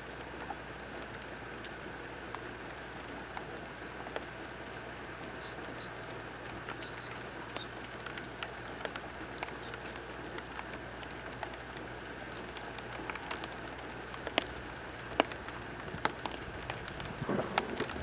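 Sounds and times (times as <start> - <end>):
sharp ticks of raindrops: 0.0 - 18.0
steady rain: 0.0 - 18.0
low rumble of thunder: 16.4 - 18.0.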